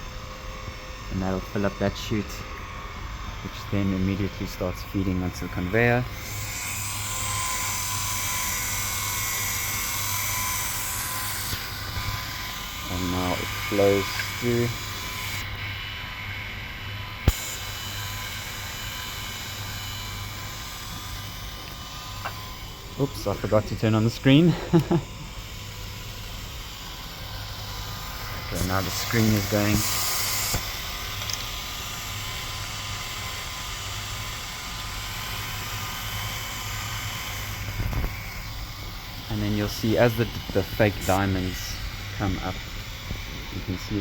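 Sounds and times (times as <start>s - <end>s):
conveyor motors humming and whining: 0.0s - 44.0s
sharp click: 17.2s - 17.6s, 28.6s - 31.5s
even hiss of conveyor: 28.3s - 32.2s, 39.3s - 42.6s.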